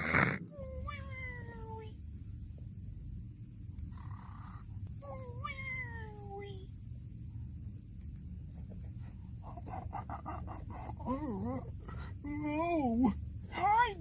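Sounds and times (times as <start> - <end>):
cartoon snoring: 0.0 - 0.4
steady low rumble: 0.4 - 14.0.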